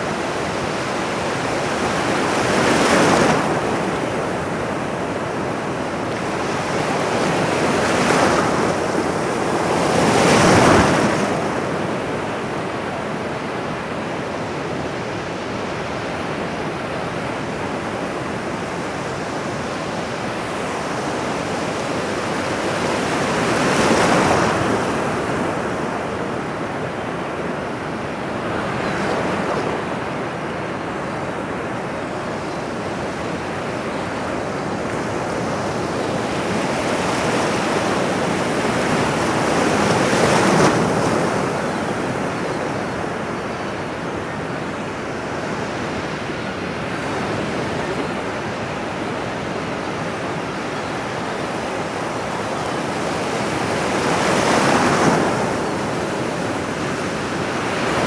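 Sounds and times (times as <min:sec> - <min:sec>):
ocean waves breaking: 0:19.5 - 0:58.0.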